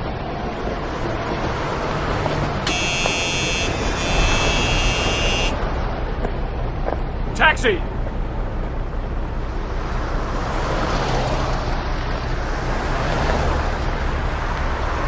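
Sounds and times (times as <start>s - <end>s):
steady rumbling background noise: 0.0s - 15.0s
high-pitched buzzing tone: 2.7s - 5.6s.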